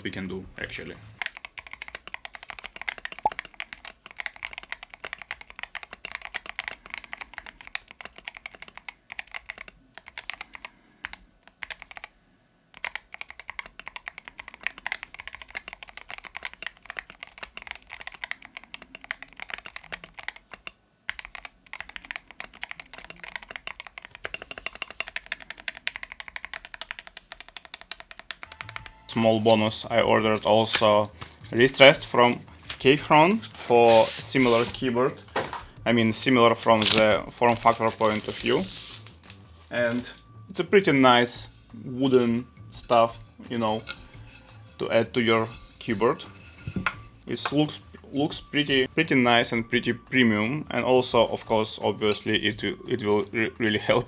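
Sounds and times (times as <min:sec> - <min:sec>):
mechanical keyboard typing: 0:00.6 - 0:35.2, 0:36.1 - 0:39.3.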